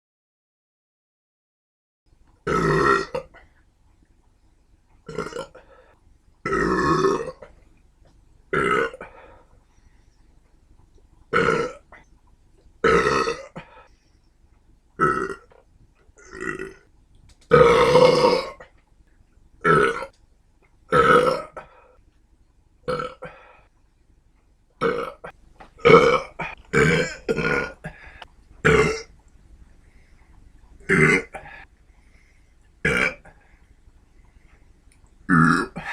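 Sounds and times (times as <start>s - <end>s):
person burping: 2.5s - 3.5s, 5.1s - 5.6s, 6.5s - 7.5s, 8.5s - 9.3s, 11.3s - 11.9s, 12.8s - 13.8s, 15.0s - 15.6s, 16.2s - 16.8s, 17.5s - 18.7s, 19.6s - 20.1s, 20.9s - 21.9s, 22.9s - 23.5s, 24.8s - 29.1s, 30.8s - 31.6s, 32.8s - 33.4s, 35.3s - 35.9s.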